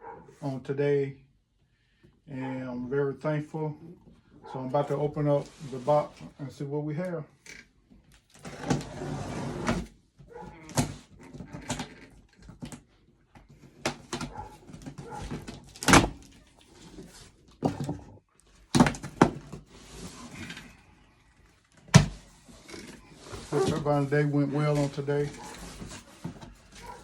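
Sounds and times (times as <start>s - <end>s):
cardboard rustling and scraping: 4.8s - 6.4s, 8.2s - 12.8s, 13.5s - 27.0s.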